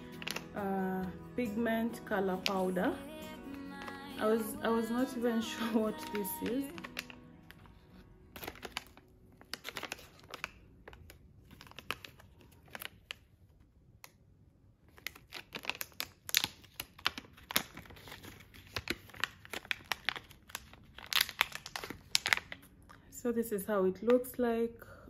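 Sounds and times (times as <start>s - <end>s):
packaging crinkling and tearing: 0.0s - 0.6s, 5.1s - 13.7s, 14.8s - 23.0s.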